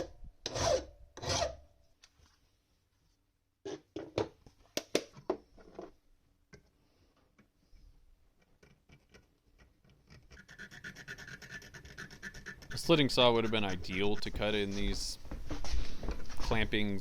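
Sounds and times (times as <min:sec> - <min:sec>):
faint fast scratching: 0:08.9 - 0:16.8.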